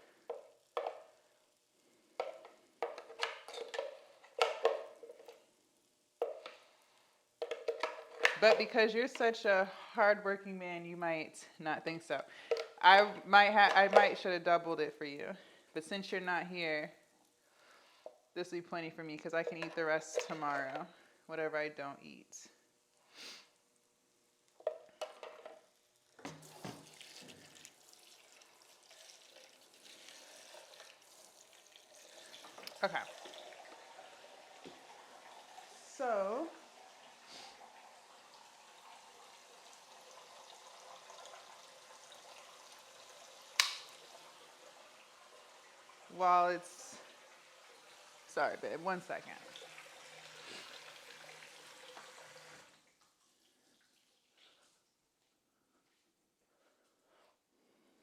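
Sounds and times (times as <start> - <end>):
kitchen sounds: 0.0 - 1.3, 2.0 - 5.6, 6.2 - 6.8, 7.4 - 10.6, 11.6 - 14.9, 17.6 - 22.4, 24.6 - 54.7
kitchen utensils clattering: 2.2 - 5.3, 7.4 - 9.4, 19.4 - 20.8
pancake batter sizzling: 25.7 - 48.3.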